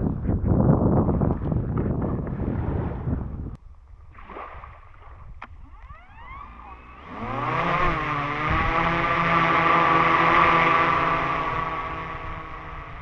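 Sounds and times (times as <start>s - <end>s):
wind noise on microphone: 0.0s - 13.0s
drone motors whining: 5.6s - 13.0s.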